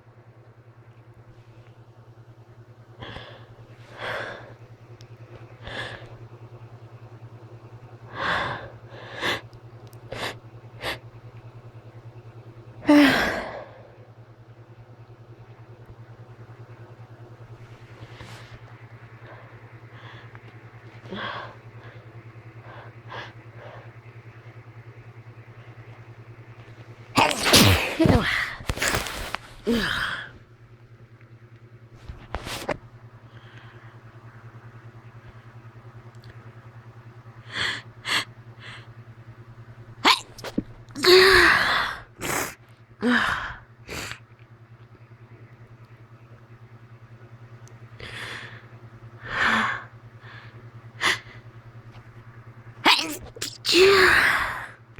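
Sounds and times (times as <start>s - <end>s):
low pulsing hum: 0.0s - 54.9s
person sneezing loudly: 27.2s - 30.0s, 40.0s - 42.6s, 52.8s - 54.2s.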